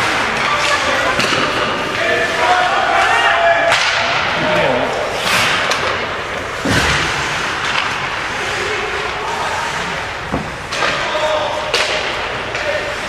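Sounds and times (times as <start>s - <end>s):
hockey stick and puck knocks: 0.4s - 2.0s.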